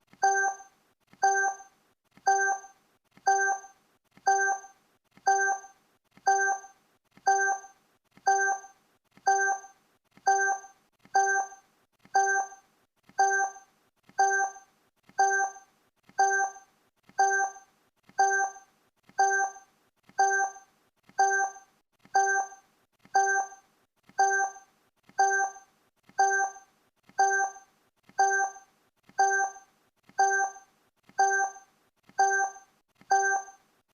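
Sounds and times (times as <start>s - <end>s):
countdown timer ticking: 0.2s - 0.6s, 1.2s - 1.6s, 2.3s - 2.7s, 3.3s - 3.7s, 4.3s - 4.7s, 5.3s - 5.7s, 6.3s - 6.7s, 7.3s - 7.7s, 8.3s - 8.7s, 9.3s - 9.7s, 10.3s - 11.6s, 12.2s - 12.6s, 13.2s - 13.6s, 14.2s - 14.6s, 15.2s - 15.6s, 16.2s - 16.6s, 17.2s - 17.6s, 18.2s - 18.6s, 19.2s - 19.6s, 20.2s - 20.6s, 21.2s - 21.6s, 22.2s - 22.6s, 23.2s - 23.6s, 24.2s - 24.6s, 25.2s - 25.6s, 26.2s - 26.6s, 27.2s - 27.6s, 28.2s - 28.6s, 29.2s - 29.6s, 30.2s - 30.6s, 31.2s - 31.6s, 32.2s - 33.6s.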